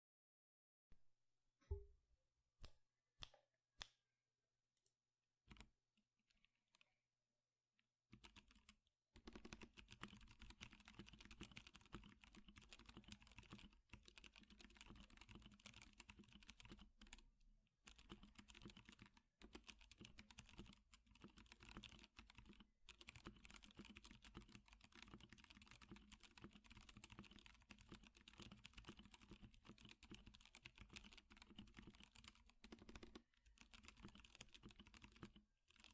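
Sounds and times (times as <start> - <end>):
typing on mechanical keyboard: 5.5 - 5.7, 8.1 - 17.2, 17.9 - 35.9.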